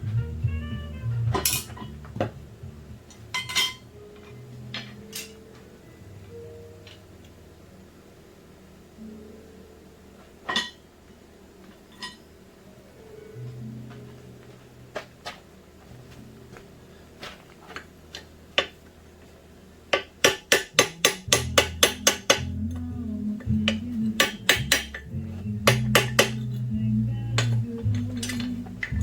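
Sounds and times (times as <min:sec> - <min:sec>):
music with low bass line: 0:00.0 - 0:05.1, 0:21.2 - 0:29.0
hammer striking steel on anvil: 0:20.0 - 0:22.6, 0:23.7 - 0:25.1, 0:25.7 - 0:26.6.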